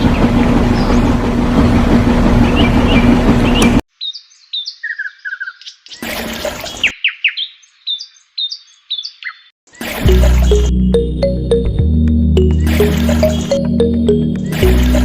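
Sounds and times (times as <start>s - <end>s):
small birds chirping: 2.4s - 10.8s
music: 10.0s - 15.0s.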